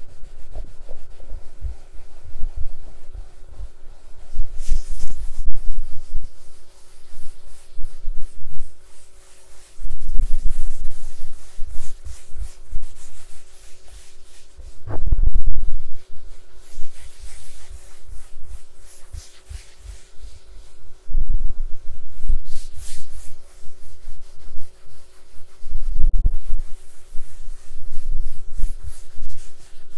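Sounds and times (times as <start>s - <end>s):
muffled low bumps: 14.7s - 16.0s.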